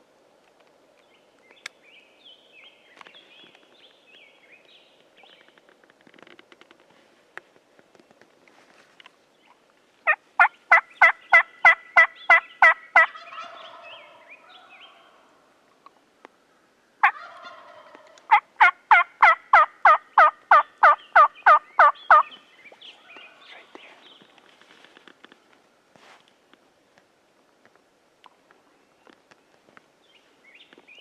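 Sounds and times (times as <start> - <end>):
turkey yelping: 10.1 - 15.2, 17.0 - 22.2.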